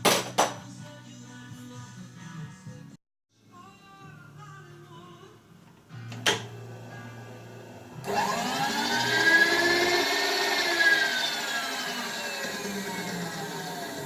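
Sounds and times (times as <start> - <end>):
power tool motor whining: 8.0 - 14.0.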